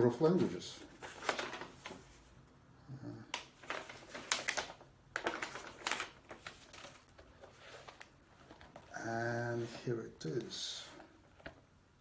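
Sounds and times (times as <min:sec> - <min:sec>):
paper rustling: 0:00.1 - 0:02.4, 0:03.4 - 0:11.6.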